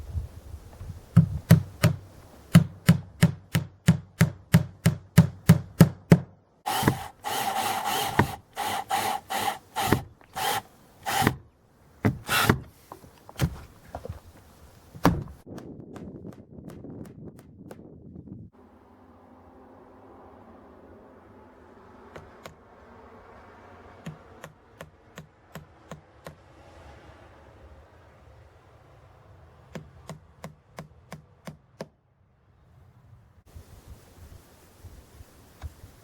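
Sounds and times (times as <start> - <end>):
sharp knocks on wood: 1.2 - 7.0, 15.0 - 17.2
hand sawing wood: 6.7 - 11.4, 12.1 - 14.4.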